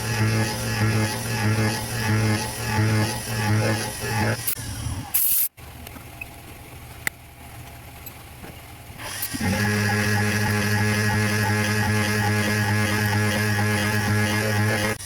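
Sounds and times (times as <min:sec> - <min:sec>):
electric motor humming and whining: 0:00.0 - 0:05.1, 0:09.0 - 0:15.0.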